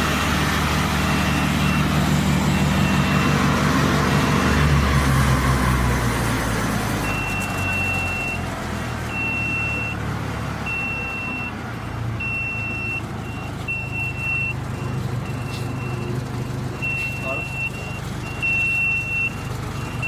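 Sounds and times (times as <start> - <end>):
wood chipper engine running: 0.0 - 20.0
high electronic beep: 16.8 - 19.3.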